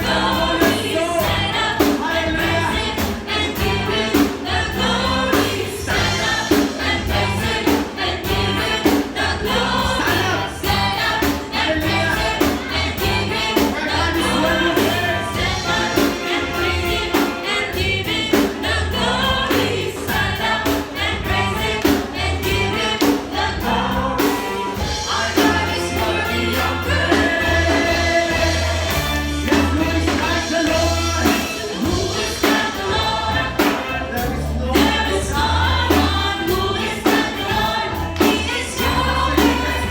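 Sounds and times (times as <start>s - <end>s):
bass notes: 0.0s - 39.9s
gospel band playing: 0.0s - 39.9s
group of singers: 0.0s - 39.9s
steady drum beat: 0.0s - 39.9s.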